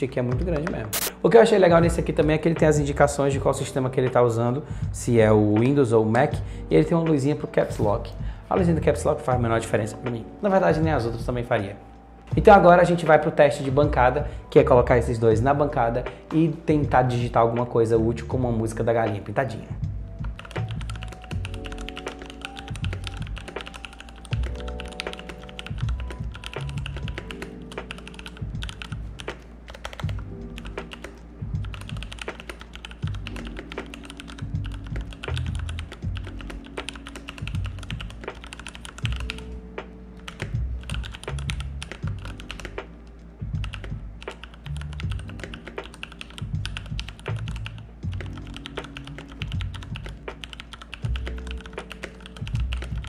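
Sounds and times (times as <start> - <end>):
music playing: 0.0 - 53.0
mechanical keyboard typing: 0.5 - 1.1, 20.2 - 39.5, 40.2 - 42.8, 43.6 - 53.0.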